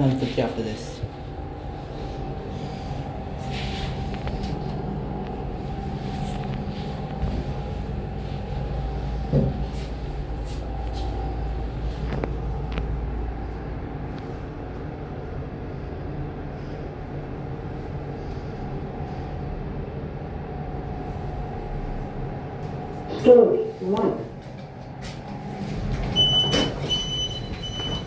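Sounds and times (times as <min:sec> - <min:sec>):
lift drive hum with whine: 0:00.0 - 0:28.0
low rumble: 0:00.9 - 0:23.1
lift car clicks and rattles: 0:25.2 - 0:28.0.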